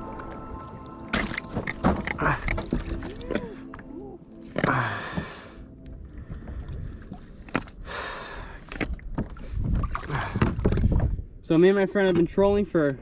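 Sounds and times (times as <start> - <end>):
water splashing against kayak: 0.0 - 3.8, 6.4 - 11.2.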